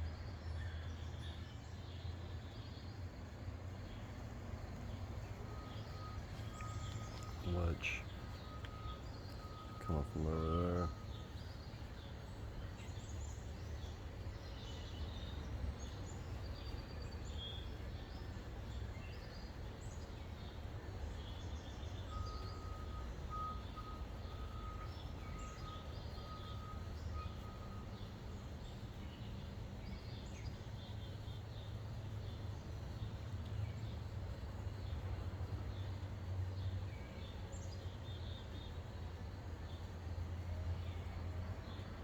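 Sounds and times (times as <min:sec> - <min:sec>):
birds chirping: 0:00.0 - 0:42.0
low engine rumble: 0:00.0 - 0:42.0
vehicle reversing beeper: 0:03.9 - 0:14.2, 0:20.6 - 0:29.6.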